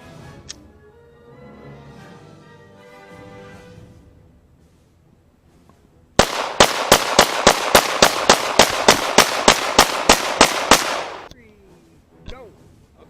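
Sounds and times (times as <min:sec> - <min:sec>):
pistol firing rapid shots: 0:06.2 - 0:11.3.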